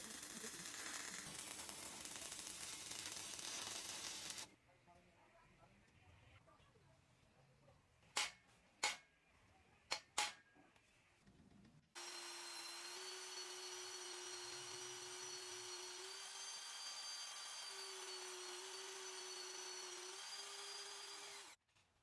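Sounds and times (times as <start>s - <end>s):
power tool motor whining: 12.0s - 21.6s.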